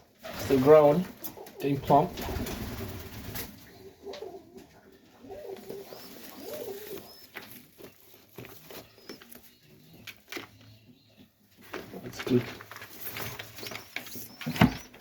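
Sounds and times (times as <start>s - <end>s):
pigeons cooing: 0.2s - 11.2s, 12.3s - 15.0s.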